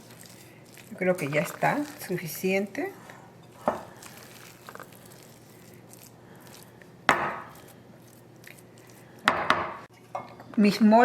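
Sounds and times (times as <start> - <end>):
kitchenware knocking: 9.3 - 9.9.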